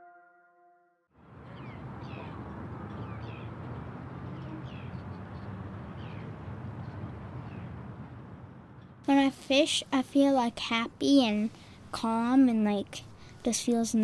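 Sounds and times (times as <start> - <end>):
birds chirping: 1.3 - 7.8.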